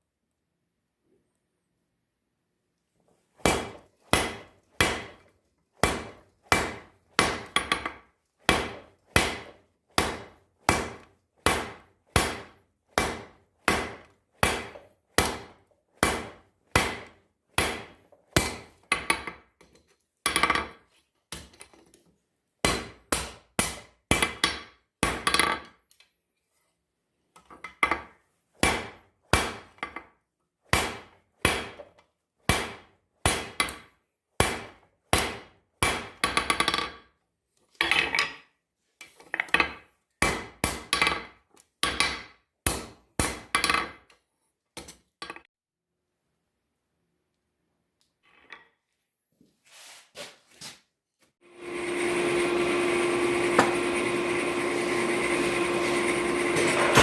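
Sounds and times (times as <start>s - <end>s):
hammer striking steel on anvil: 5.8s - 18.6s.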